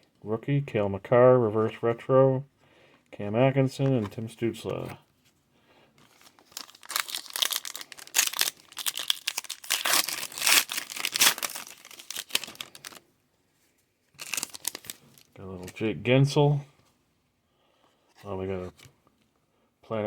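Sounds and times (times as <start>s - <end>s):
wrapper tearing and crinkling: 6.1s - 13.0s, 14.2s - 15.8s.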